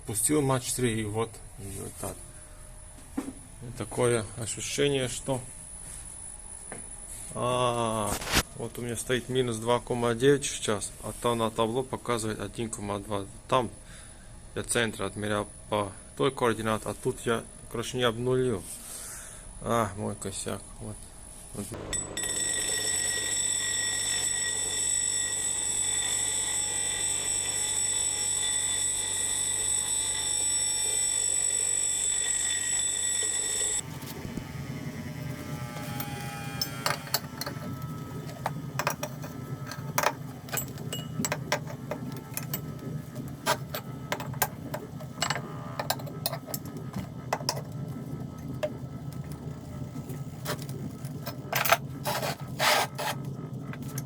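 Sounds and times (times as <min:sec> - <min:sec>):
machinery high-pitched whine: 0:21.7 - 0:53.2
machine running: 0:21.8 - 0:54.0
sharp clicks and scraping: 0:35.2 - 0:54.0.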